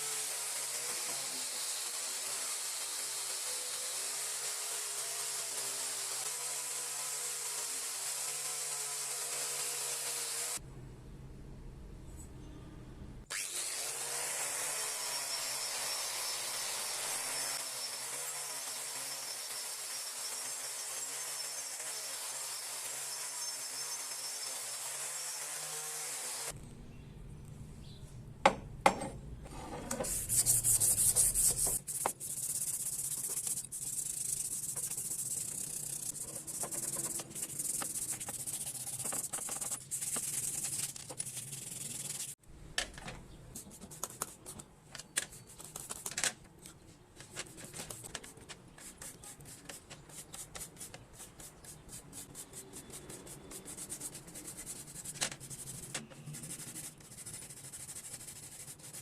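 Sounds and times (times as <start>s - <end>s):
sanding on metal: 30.0s - 42.4s, 48.8s - 59.0s.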